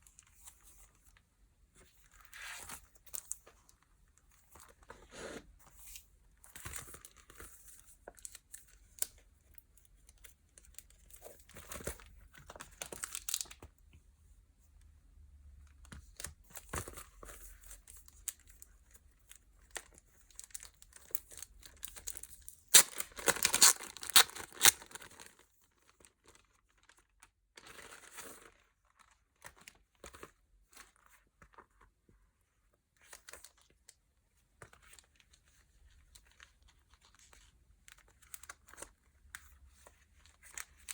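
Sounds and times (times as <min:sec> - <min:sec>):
packaging crinkling and tearing: 0:10.2 - 0:13.6, 0:19.7 - 0:30.2.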